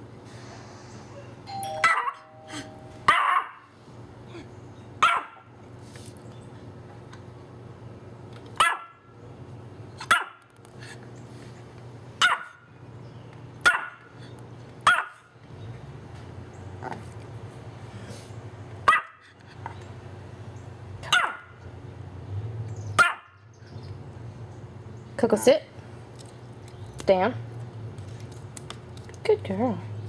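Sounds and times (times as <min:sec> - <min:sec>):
two-tone doorbell chime: 0:01.5 - 0:03.1
small dog barking: 0:01.8 - 0:02.3, 0:03.1 - 0:03.7, 0:05.0 - 0:05.5, 0:08.6 - 0:09.0, 0:10.0 - 0:10.4, 0:12.2 - 0:12.7, 0:13.6 - 0:14.1, 0:14.8 - 0:15.3, 0:18.8 - 0:19.2, 0:21.0 - 0:21.6, 0:23.0 - 0:23.4.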